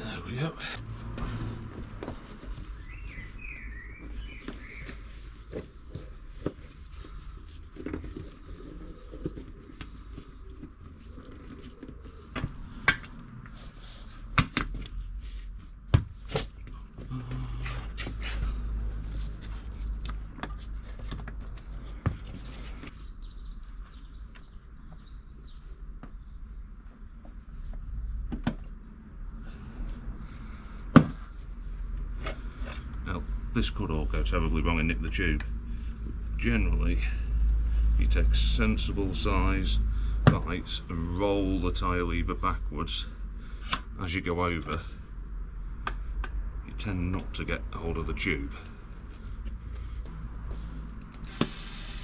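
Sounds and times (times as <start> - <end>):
birds chirping: 2.6 - 6.1, 22.6 - 27.2.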